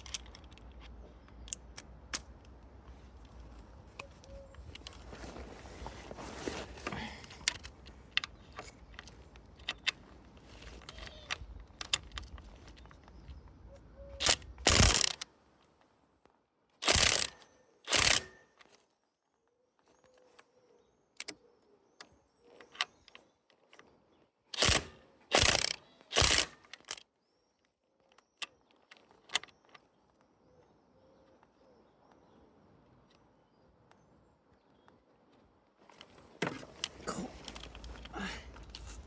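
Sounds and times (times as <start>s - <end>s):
metallic clicks of hand tools: 14.2s - 15.3s, 16.8s - 18.8s, 24.5s - 27.0s.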